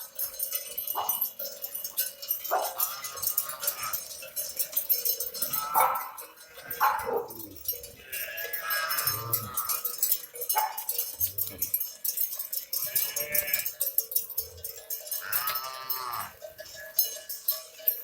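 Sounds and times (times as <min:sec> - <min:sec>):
bells jingling: 0:00.0 - 0:18.0
livestock calling: 0:02.5 - 0:04.1, 0:05.4 - 0:10.0, 0:12.8 - 0:13.7, 0:15.2 - 0:16.4.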